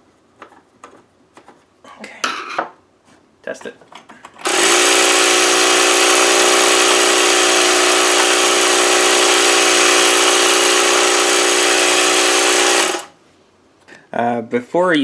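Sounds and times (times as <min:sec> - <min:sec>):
toy electric motor whirring: 0:04.4 - 0:13.1.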